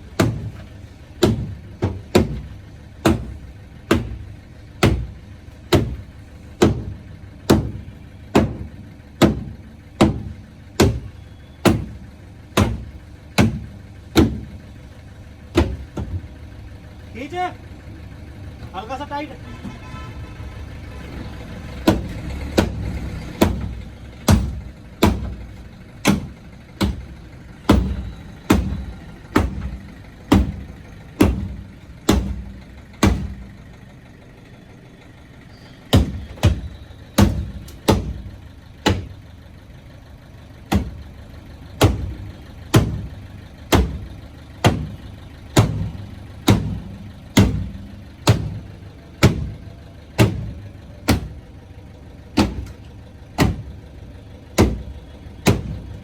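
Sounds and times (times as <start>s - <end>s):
vehicle engine idling: 0.0s - 56.0s
hammer striking metal panel: 23.4s - 27.1s, 27.7s - 33.4s, 37.2s - 38.2s, 41.8s - 43.1s, 45.6s - 48.6s, 49.2s - 49.5s, 52.4s - 52.8s.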